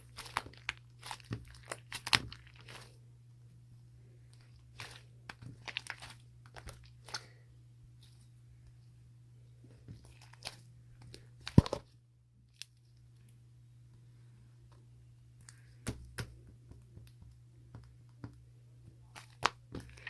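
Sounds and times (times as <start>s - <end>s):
crunches and crinkles: 0.0s - 3.0s, 4.2s - 7.4s, 9.8s - 11.9s, 19.0s - 20.0s.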